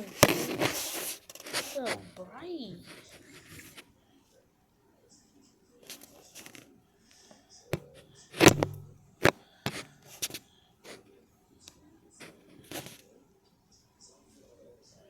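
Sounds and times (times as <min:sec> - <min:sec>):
sharp clicks and knocks: 0:07.8 - 0:09.8.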